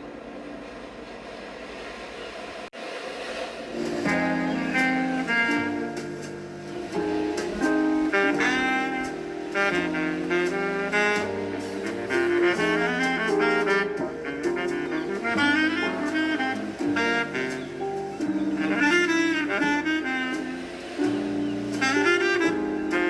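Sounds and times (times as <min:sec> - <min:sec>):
instrumental music: 0:03.6 - 0:23.0.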